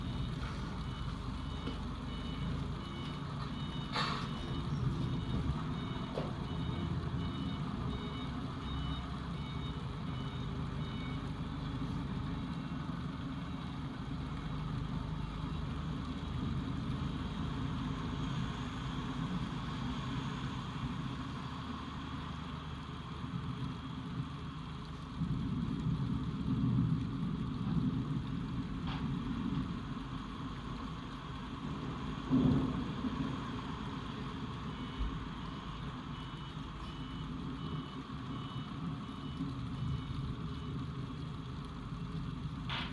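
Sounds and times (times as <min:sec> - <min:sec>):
vehicle reversing alarm beeps: 0:00.0 - 0:15.6, 0:34.1 - 0:42.1.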